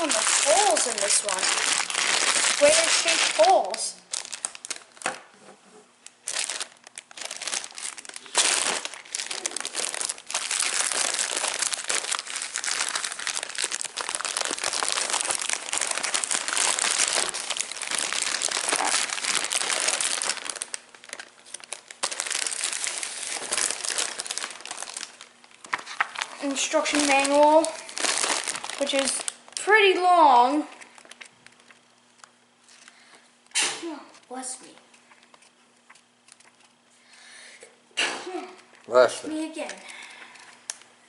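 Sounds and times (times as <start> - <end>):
plastic bags crinkling: 0.0 - 5.3, 6.1 - 33.0.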